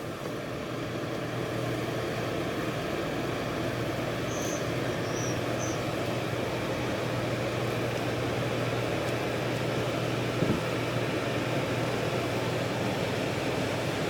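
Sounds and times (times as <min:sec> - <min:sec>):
low engine drone: 0:00.0 - 0:14.0.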